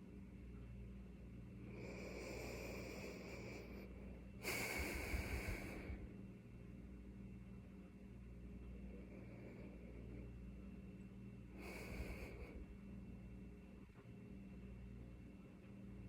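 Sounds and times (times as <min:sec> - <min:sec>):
person breathing noisily: 0:01.6 - 0:06.2, 0:11.5 - 0:12.8.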